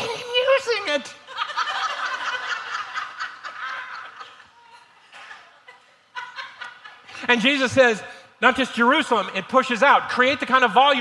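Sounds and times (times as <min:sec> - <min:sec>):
crowd laughing: 0:01.2 - 0:07.4.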